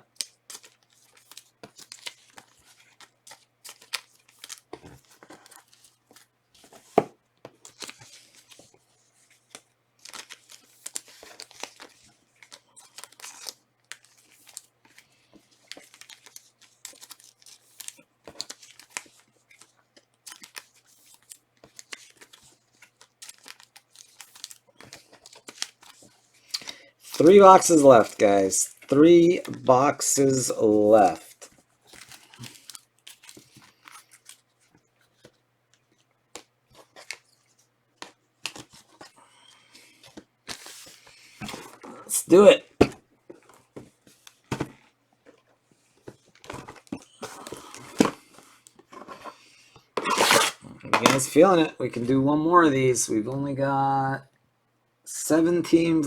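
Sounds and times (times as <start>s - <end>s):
foil wrappers crinkling: 0.1s - 6.8s, 7.5s - 42.5s, 43.3s - 51.4s
card packs being torn open: 10.0s - 15.0s, 15.6s - 29.6s, 31.9s - 34.4s, 50.0s - 51.4s.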